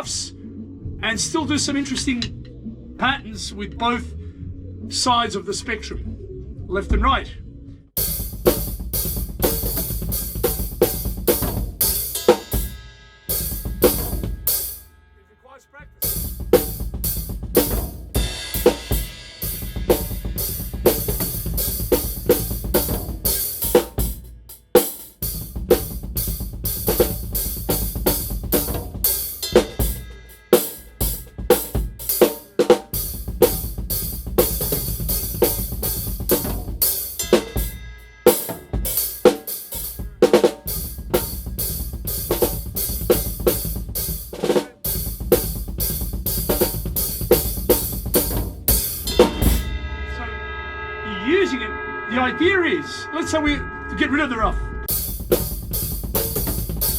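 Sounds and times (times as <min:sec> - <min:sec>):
drum kit groove: 0:08.0 - 0:15.1, 0:15.9 - 0:50.5, 0:54.8 - 0:56.9.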